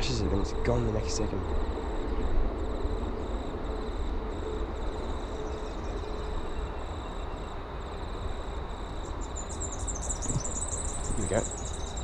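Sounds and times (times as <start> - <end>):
low outdoor rumble: 0.0 - 9.2
insects chirping: 0.0 - 12.0.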